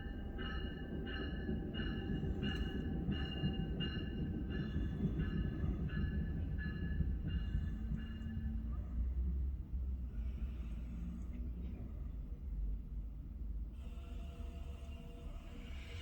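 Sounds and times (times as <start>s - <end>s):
train warning bell ringing: 0.0s - 8.8s
low rumble of arriving train: 0.0s - 16.0s.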